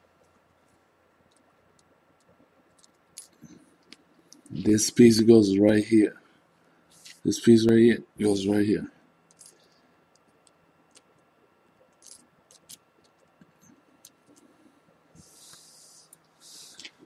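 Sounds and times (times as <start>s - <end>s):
small parts clicking: 1.3s - 4.5s, 9.3s - 11.2s, 11.9s - 14.5s.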